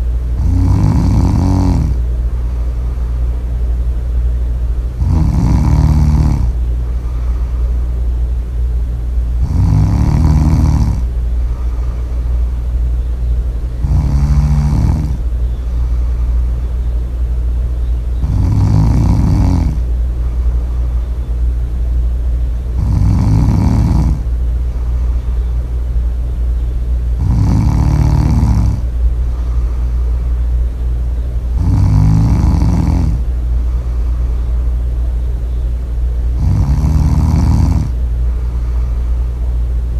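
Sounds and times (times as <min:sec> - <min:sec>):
steady low hum: 0:00.0 - 0:39.9
loud snoring: 0:00.4 - 0:02.0, 0:05.0 - 0:07.3, 0:09.4 - 0:12.3, 0:13.7 - 0:16.6, 0:18.2 - 0:19.9, 0:22.7 - 0:25.1, 0:27.2 - 0:30.1, 0:31.5 - 0:34.5, 0:36.3 - 0:39.0.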